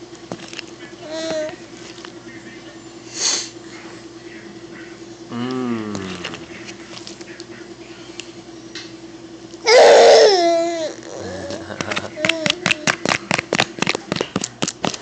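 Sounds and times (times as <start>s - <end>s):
baby squealing: 9.6s - 11.3s
baby vocalizing: 9.7s - 13.1s.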